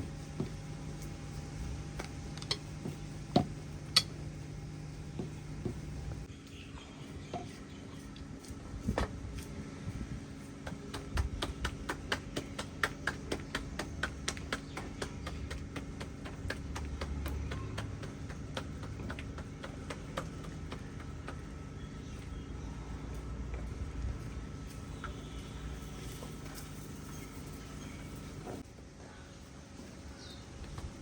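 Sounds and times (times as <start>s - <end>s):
steady low hum: 0.0s - 31.0s
rapid light taps: 10.6s - 22.2s.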